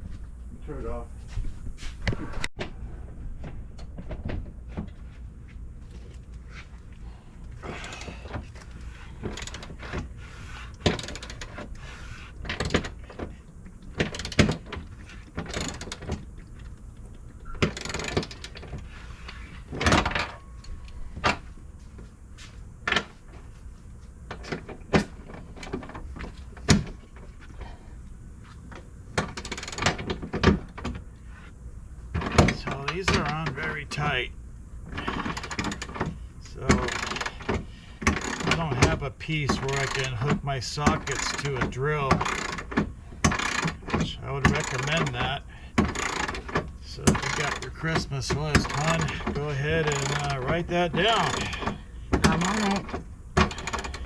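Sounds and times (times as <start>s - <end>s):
metal tools clicking and knocking: 49.9s - 50.5s, 51.1s - 54.0s.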